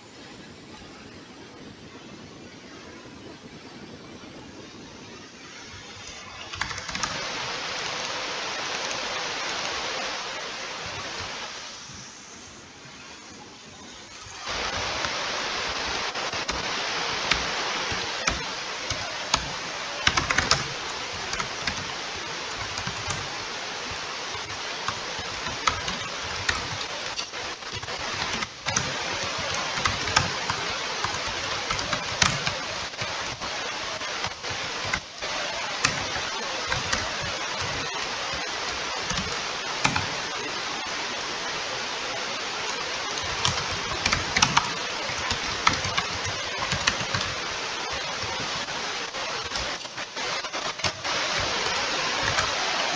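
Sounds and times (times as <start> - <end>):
laptop cooling fan whooshing: 13.7 - 30.4, 31.0 - 36.0
scattered clicks and knocks: 25.6 - 28.8, 33.0 - 35.1, 49.6 - 51.6.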